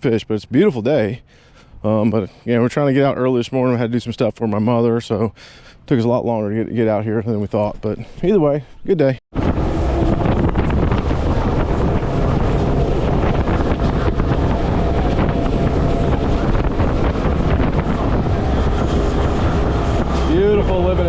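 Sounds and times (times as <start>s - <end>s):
wind buffeting microphone: 6.6s - 21.0s
water rushing past hull: 9.3s - 21.0s
outboard motor droning: 9.4s - 21.0s.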